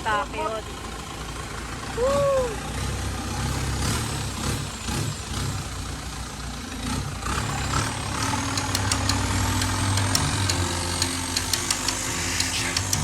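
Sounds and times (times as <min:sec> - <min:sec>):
boat motor running: 0:07.7 - 0:13.0
sharp ticks: 0:08.4 - 0:13.0.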